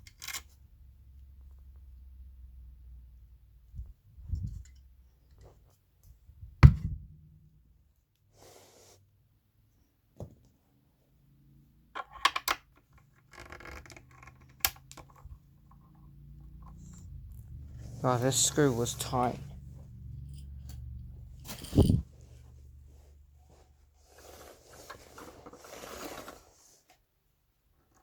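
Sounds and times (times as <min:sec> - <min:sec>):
sharp knock: 0:06.6 - 0:07.3.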